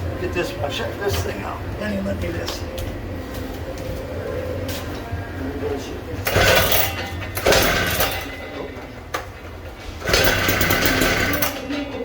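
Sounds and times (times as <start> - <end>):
concrete saw engine running: 6.2 - 8.7, 9.8 - 12.0.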